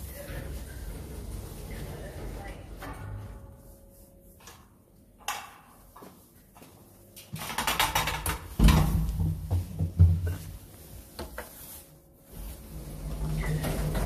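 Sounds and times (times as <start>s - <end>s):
elevator rumbling and rattling: 0.0s - 3.5s, 12.6s - 14.0s.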